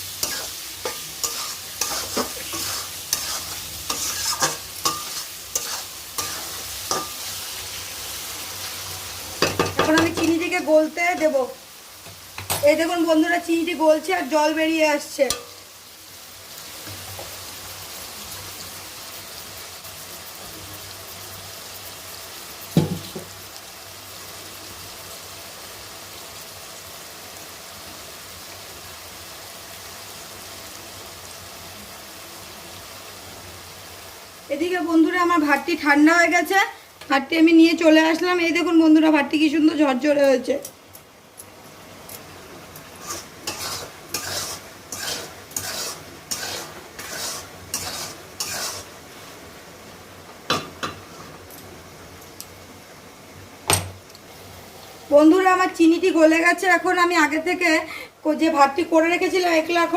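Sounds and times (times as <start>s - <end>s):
spatula scraping in a pan: 0.0s - 8.8s, 42.8s - 49.4s, 50.8s - 51.5s
sugar sizzling in hot oil: 0.0s - 59.9s.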